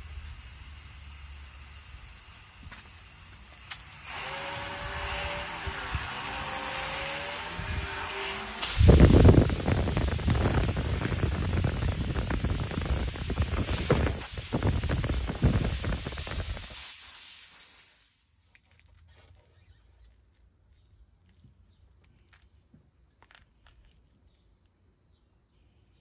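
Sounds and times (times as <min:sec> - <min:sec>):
air hissing out of tire: 0:00.0 - 0:18.3.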